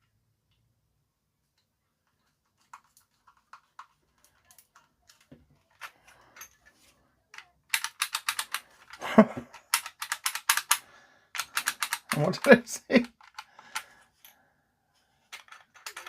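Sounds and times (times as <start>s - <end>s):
toy gun trigger clicking: 7.7s - 8.6s, 9.7s - 10.8s, 11.4s - 12.5s.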